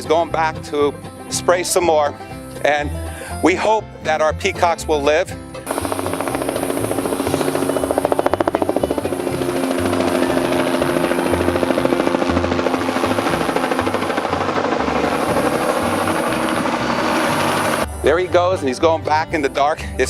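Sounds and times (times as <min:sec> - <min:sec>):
helicopter rotor beating: 0:05.6 - 0:17.9
steady drone: 0:05.7 - 0:18.1.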